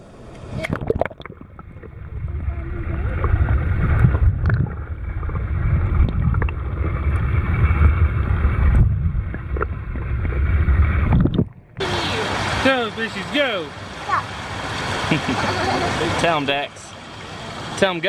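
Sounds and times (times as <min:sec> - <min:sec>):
flowing water hiss: 0:11.8 - 0:18.0.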